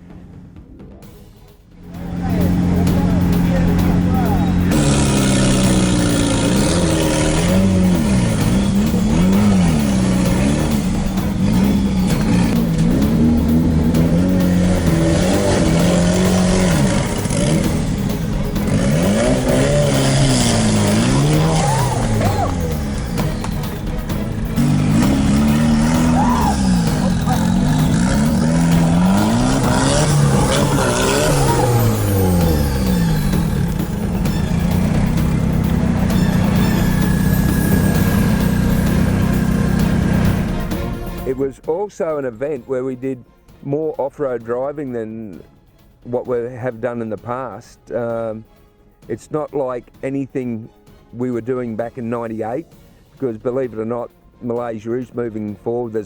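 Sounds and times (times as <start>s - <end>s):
engine revving up and down: 1.8s - 41.2s.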